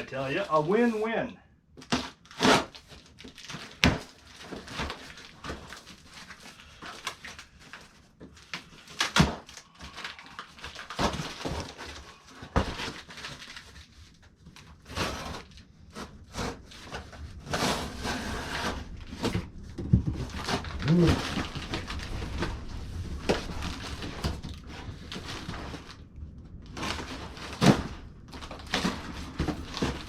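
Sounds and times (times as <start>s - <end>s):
cardboard rustling and scraping: 1.8s - 30.0s.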